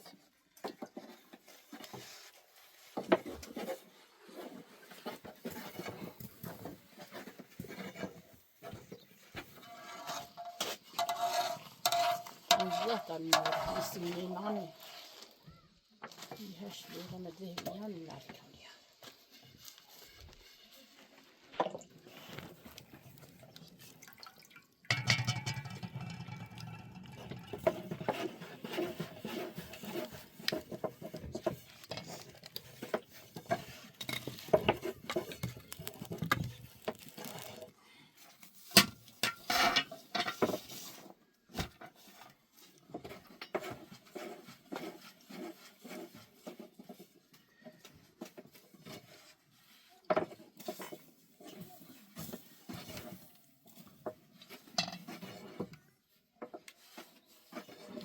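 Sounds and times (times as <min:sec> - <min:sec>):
water pouring into metal vessel: 0:22.8 - 0:28.0
pots and dishes clinking: 0:24.9 - 0:29.3.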